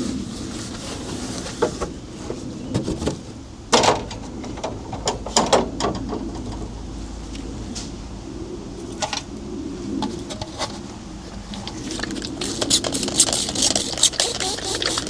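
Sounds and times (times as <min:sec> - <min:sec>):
steady low hum: 0:00.0 - 0:15.0
clicks and scrapes: 0:11.6 - 0:15.0.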